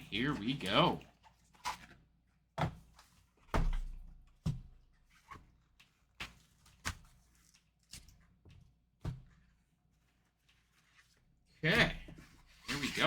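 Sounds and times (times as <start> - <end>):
knocks and taps on cardboard box: 2.6 - 4.8.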